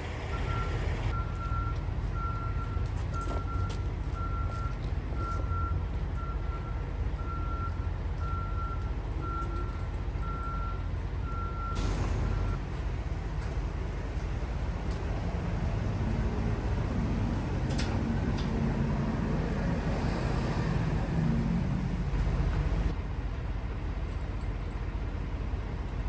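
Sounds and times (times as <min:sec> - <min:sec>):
truck reversing alarm beeping: 0:00.0 - 0:12.8, 0:15.5 - 0:22.9
diesel engine running: 0:00.0 - 0:26.0.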